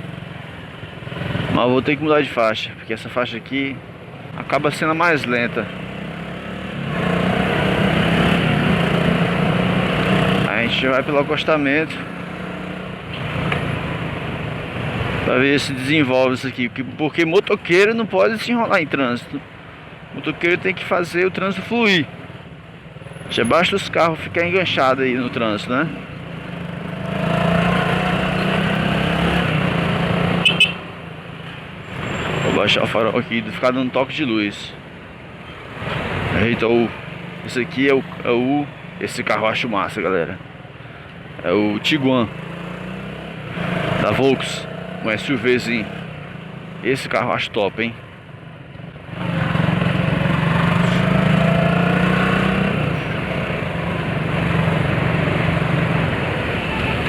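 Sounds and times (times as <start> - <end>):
motorcycle engine revving: 0.0 - 1.8, 5.3 - 15.2, 24.4 - 31.0, 42.0 - 46.9, 49.1 - 57.0.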